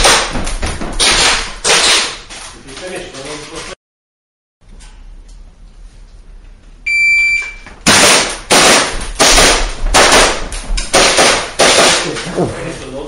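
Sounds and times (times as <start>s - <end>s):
rapid pistol shots indoors: 0.0s - 2.3s, 7.8s - 12.3s
shot timer beep: 6.9s - 7.7s.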